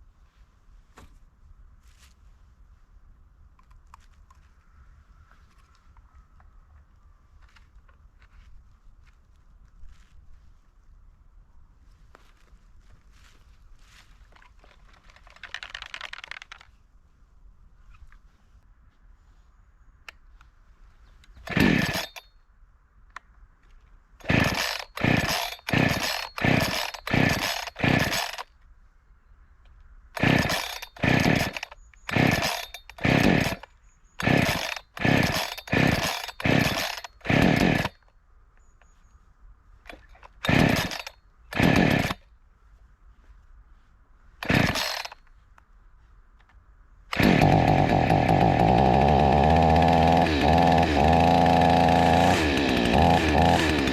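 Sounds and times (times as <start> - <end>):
chainsaw engine running: 21.4 - 22.2, 24.2 - 28.4, 30.2 - 38.0, 39.9 - 42.2, 44.4 - 45.2, 47.1 - 53.9
recoil starter cord rasping: 21.4 - 22.2, 24.2 - 28.5, 30.2 - 38.0, 39.9 - 42.3, 44.4 - 45.2, 47.1 - 53.9.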